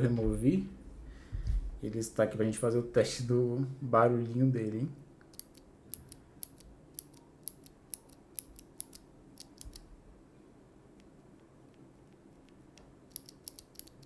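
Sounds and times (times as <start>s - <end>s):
keyboard switch clicking: 13.1s - 14.0s.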